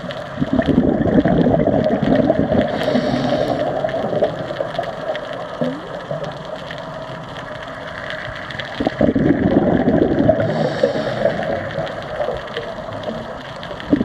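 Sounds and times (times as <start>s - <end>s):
exhaled bubbles gurgling underwater: 0.0s - 14.0s.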